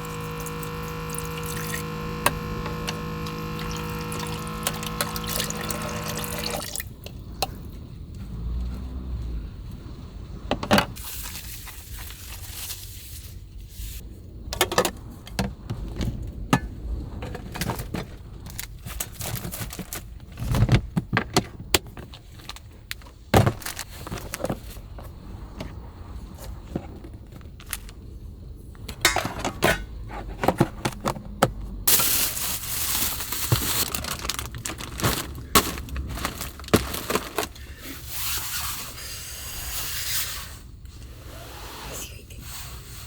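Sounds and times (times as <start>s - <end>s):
liquid pouring into container: 0.0s - 7.6s
knocks and clinks of handling: 28.9s - 32.6s.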